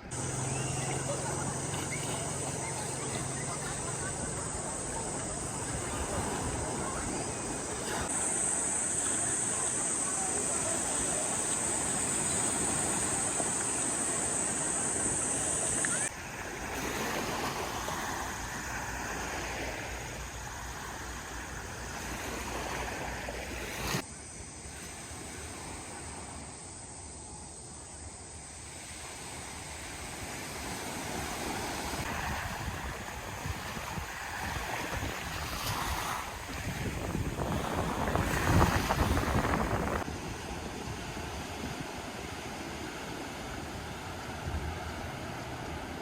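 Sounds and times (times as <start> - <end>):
sea waves washing onto beach: 0.0 - 24.0, 28.5 - 46.0.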